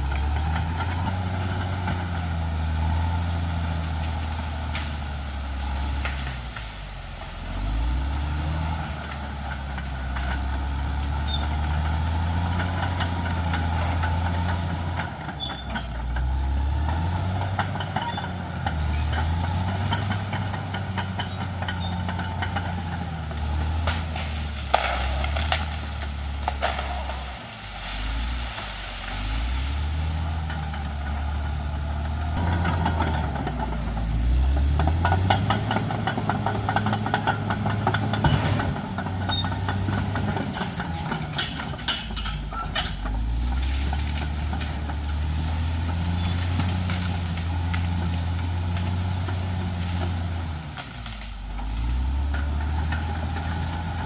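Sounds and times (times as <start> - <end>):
bulldozer diesel engine: 0.0 - 54.0
sharp cracks and clanks: 23.8 - 27.4.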